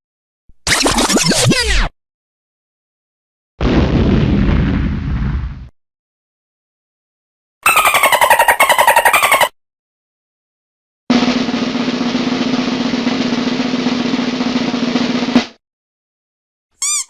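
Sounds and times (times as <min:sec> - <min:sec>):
snare drum roll: 0:11.1 - 0:15.6.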